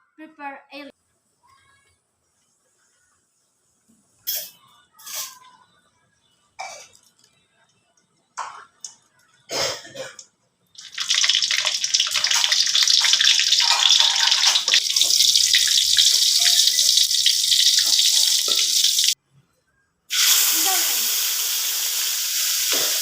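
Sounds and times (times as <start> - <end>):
food sizzling in hot oil: 10.8 - 19.2, 20.1 - 23.0.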